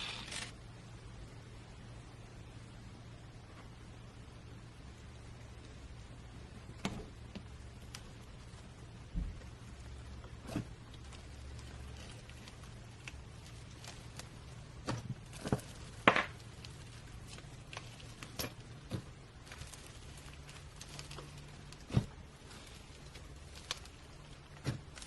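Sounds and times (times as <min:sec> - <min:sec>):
low steady hum: 0:00.0 - 0:25.0.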